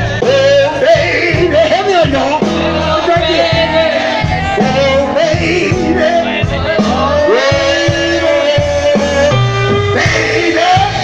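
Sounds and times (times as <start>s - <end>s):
live blues band: 0.0s - 11.0s.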